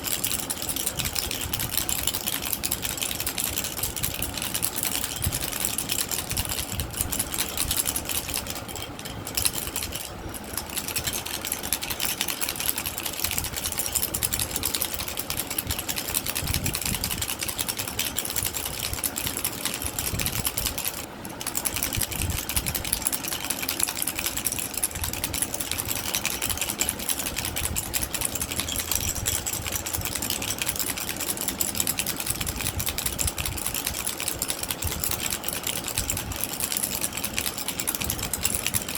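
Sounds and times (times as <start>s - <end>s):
baby rattle shaken rapidly: 0.0s - 38.9s.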